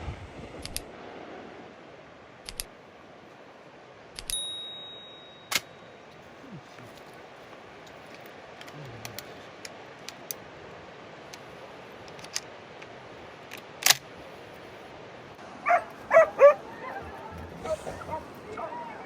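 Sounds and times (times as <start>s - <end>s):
dog barking: 15.6s - 19.0s.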